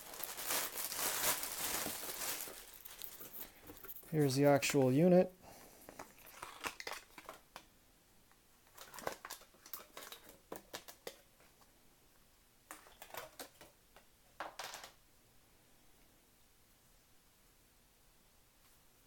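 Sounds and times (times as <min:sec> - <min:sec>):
packaging rustling and clicking: 0:00.0 - 0:04.8, 0:08.7 - 0:11.2.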